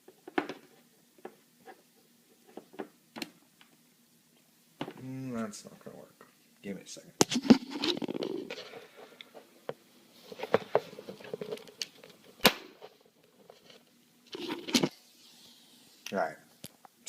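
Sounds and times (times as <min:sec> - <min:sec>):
rustling and scraping of hardware: 0:07.3 - 0:15.0.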